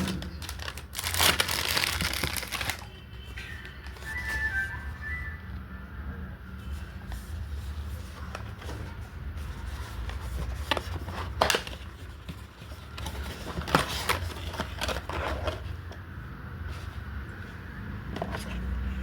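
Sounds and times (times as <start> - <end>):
packaging taps clicks and scrapes: 0.0 - 2.8.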